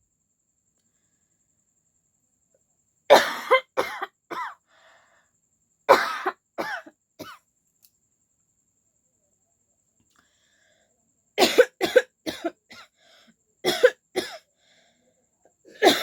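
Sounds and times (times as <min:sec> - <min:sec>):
person coughing: 0:03.1 - 0:04.6, 0:05.9 - 0:07.4, 0:11.4 - 0:12.8, 0:13.7 - 0:14.4, 0:15.8 - 0:16.0.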